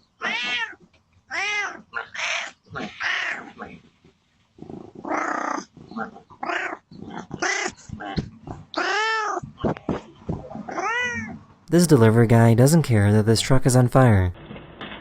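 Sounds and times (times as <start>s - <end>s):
cat meowing: 0.2s - 3.4s, 8.8s - 9.4s, 10.6s - 11.4s.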